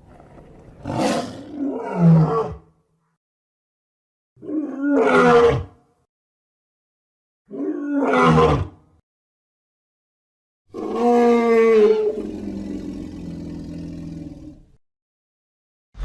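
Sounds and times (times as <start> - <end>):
lion roaring: 0.1 - 2.7, 10.7 - 14.8
lion growling: 10.7 - 14.8.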